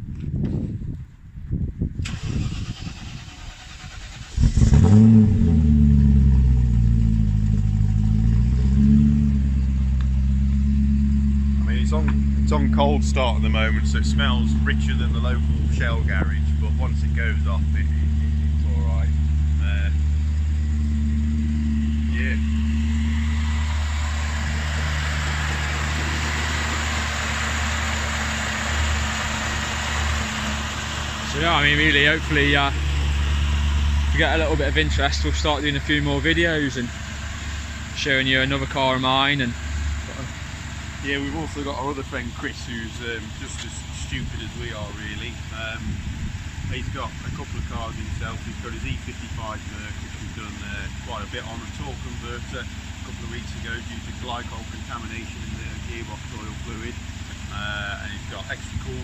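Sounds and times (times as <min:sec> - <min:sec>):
car engine starting and idling: 0:02.0 - 0:59.0.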